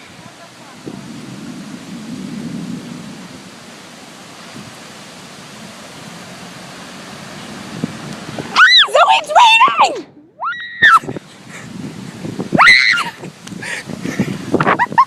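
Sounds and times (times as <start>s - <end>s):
low thunder rumble: 0.0s - 6.3s
rain falling steadily: 0.0s - 15.0s.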